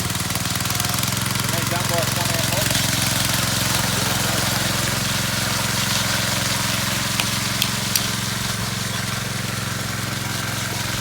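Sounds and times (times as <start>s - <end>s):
power trowel engine running: 0.0s - 11.0s
short sharp clicks: 7.1s - 8.2s.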